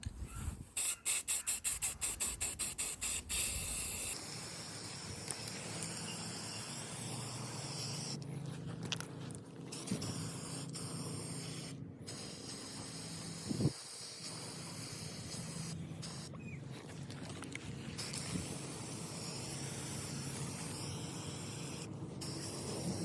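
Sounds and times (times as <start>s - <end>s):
spray can ball rattling: 0.8s - 8.2s, 18.0s - 23.0s
spray can hissing: 0.8s - 8.2s, 9.7s - 16.3s, 18.0s - 23.0s.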